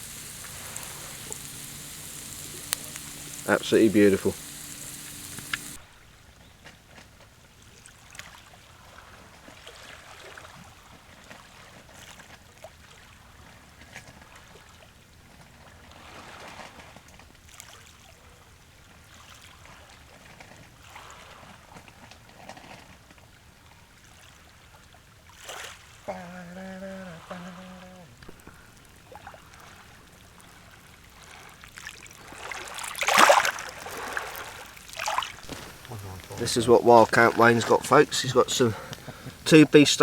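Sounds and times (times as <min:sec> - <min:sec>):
small waves lapping on beach: 0:00.0 - 0:05.8, 0:24.0 - 0:40.0.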